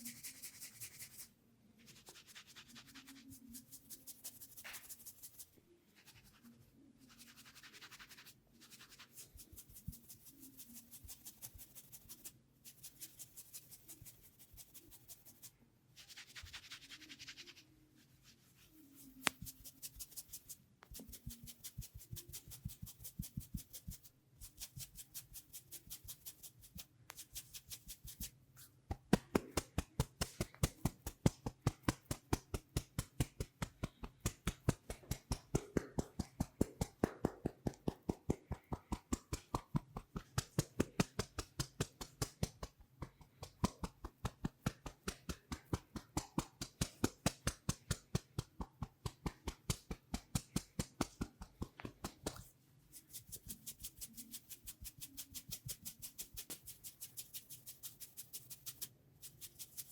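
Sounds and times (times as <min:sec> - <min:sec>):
rapid hand tapping slaps: 0:28.9 - 0:52.5.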